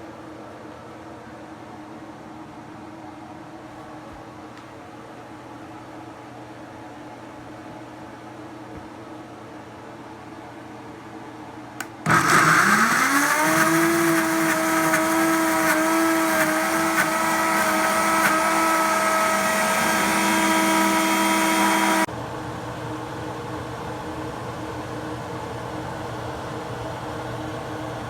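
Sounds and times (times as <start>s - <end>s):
small electric motor whining: 12.1s - 22.1s.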